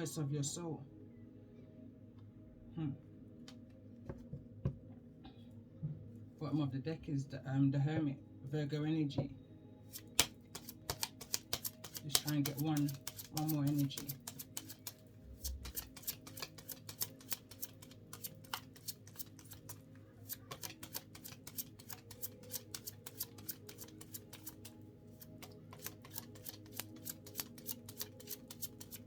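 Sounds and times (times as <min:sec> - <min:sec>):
cards being shuffled: 0:09.9 - 0:29.0.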